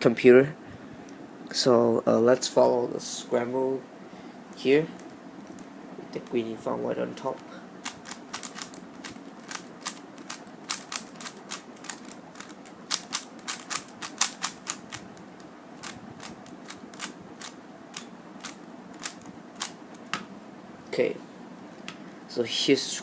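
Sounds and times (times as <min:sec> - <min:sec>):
puzzle cube layers clicking: 0:07.8 - 0:15.0.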